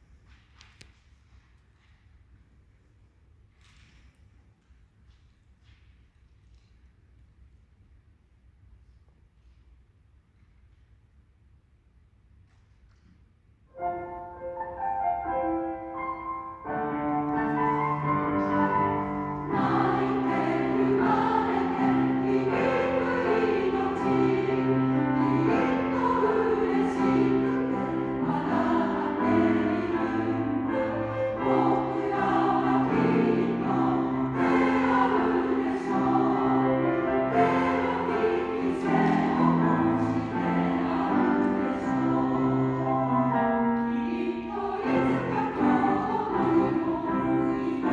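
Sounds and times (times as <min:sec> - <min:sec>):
choir singing: 0:13.8 - 0:47.9
piano accompaniment: 0:13.8 - 0:47.9.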